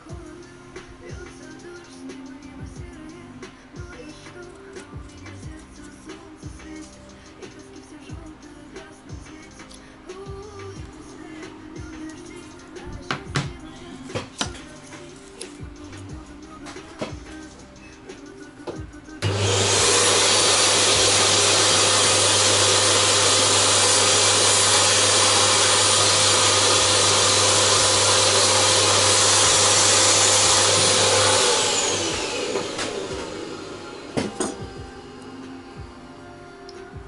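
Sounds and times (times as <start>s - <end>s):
air blower motor rushing: 19.2s - 36.0s.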